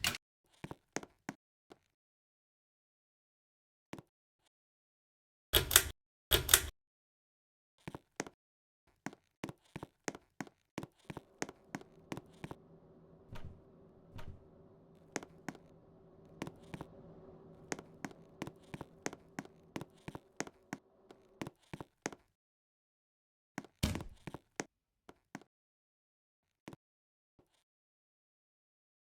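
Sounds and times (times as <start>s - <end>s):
ceiling fan motor hum: 11.6s - 20.4s.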